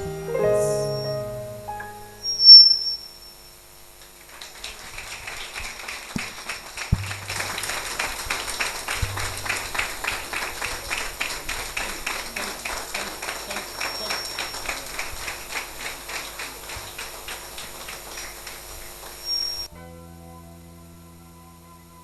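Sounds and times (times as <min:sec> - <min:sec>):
high-pitched squeal: 0:02.2 - 0:03.4, 0:19.2 - 0:19.7
crowd clapping in rhythm: 0:04.2 - 0:19.7.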